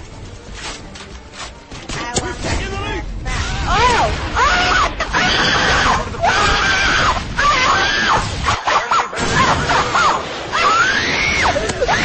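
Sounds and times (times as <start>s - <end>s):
young child screaming: 3.4s - 12.0s.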